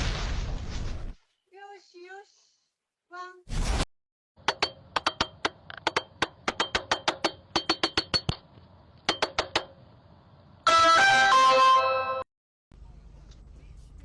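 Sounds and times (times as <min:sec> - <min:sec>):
sharp ringing taps: 0:04.4 - 0:08.4, 0:09.1 - 0:09.8.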